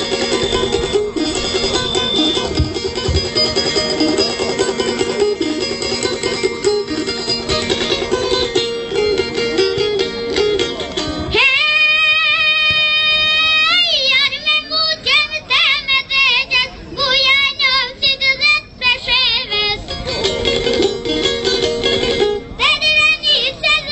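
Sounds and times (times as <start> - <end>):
plucked string instrument: 0.0 - 17.0, 17.6 - 23.9
child singing: 11.3 - 19.8, 22.6 - 23.9.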